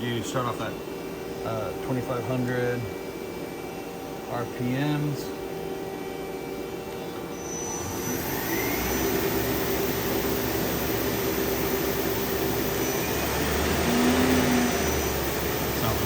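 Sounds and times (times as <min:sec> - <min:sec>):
lathe spindle whirring: 0:00.0 - 0:16.0
short rising whine: 0:05.1 - 0:16.0.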